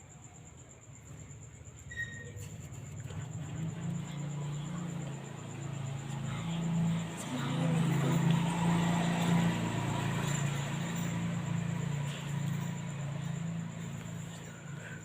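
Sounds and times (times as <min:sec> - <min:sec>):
vehicle engine humming: 0:02.4 - 0:15.0.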